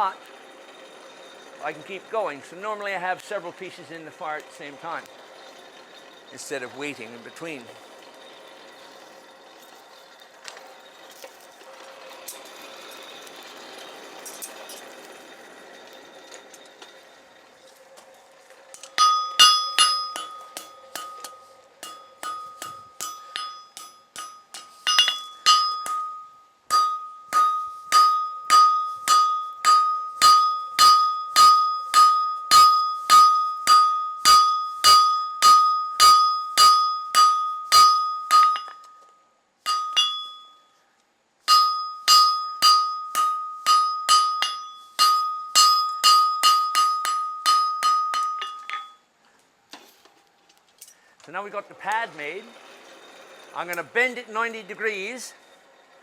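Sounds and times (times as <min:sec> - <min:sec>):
hammer striking iron on anvil: 0:18.8 - 0:39.1, 0:39.7 - 0:40.6, 0:41.5 - 0:49.0.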